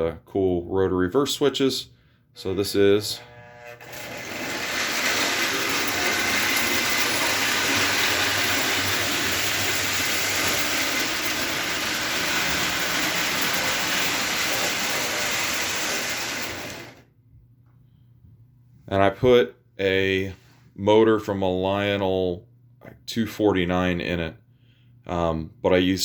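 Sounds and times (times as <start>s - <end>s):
toy train motor whirring: 3.0s - 17.0s
wheels rolling on track: 3.8s - 17.0s.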